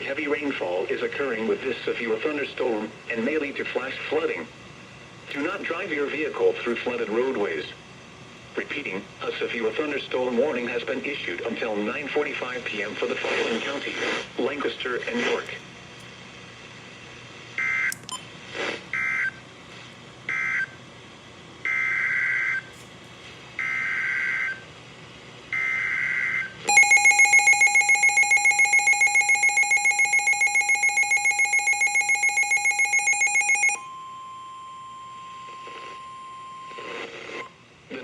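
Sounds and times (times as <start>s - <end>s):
loud pulsing alert beep: 26.7s - 34.2s
steady attention tone: 26.7s - 37.0s.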